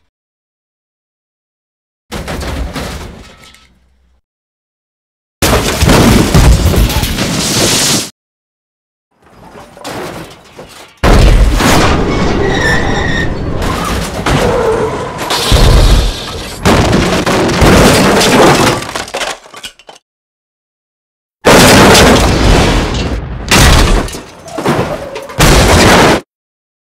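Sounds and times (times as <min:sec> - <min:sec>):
debris crashing and breaking: 0:02.1 - 0:03.7, 0:05.4 - 0:08.1, 0:09.2 - 0:20.0, 0:21.5 - 0:26.3
car crash impact: 0:21.5 - 0:26.3.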